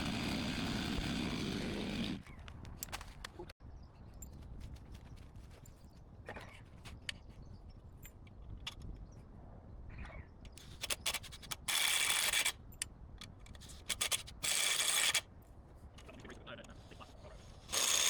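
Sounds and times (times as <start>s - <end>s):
clicks and knocks of gear: 2.2s - 3.5s
cordless drill driving screw: 17.7s - 18.0s.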